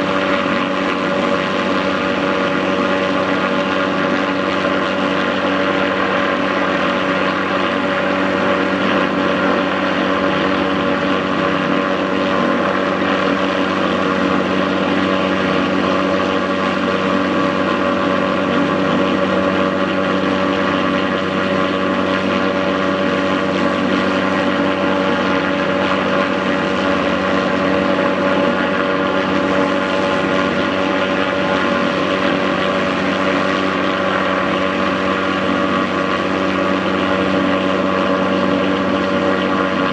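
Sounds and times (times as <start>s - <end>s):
helicopter running: 0.0s - 39.9s.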